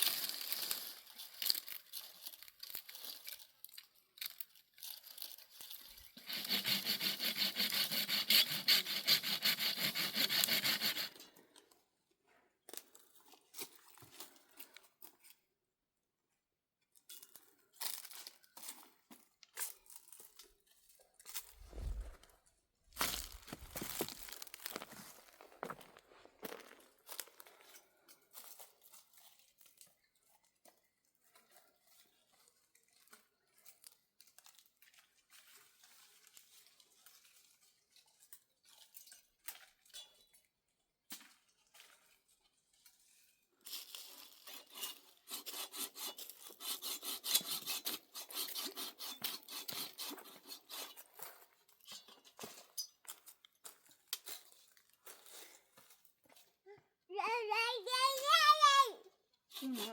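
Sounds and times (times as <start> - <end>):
crackling and tearing: 23.0 - 25.3.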